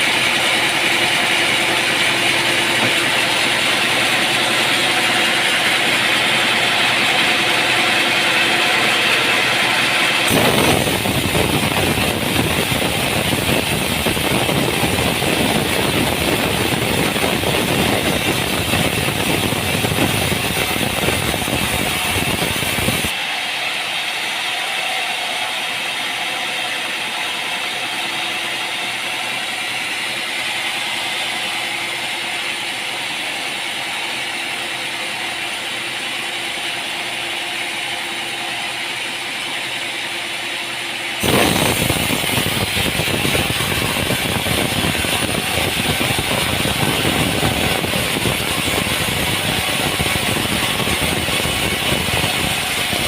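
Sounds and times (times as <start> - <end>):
machine hum: 0.0 - 53.0
sawmill machinery din: 0.0 - 53.0.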